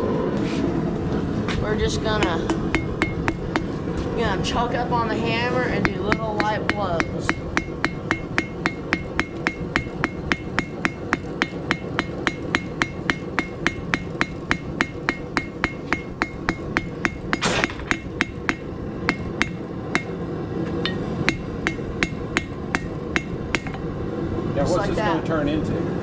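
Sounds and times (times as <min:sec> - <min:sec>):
hammer striking steel on anvil: 0:02.2 - 0:04.0, 0:05.8 - 0:20.2, 0:20.8 - 0:23.9.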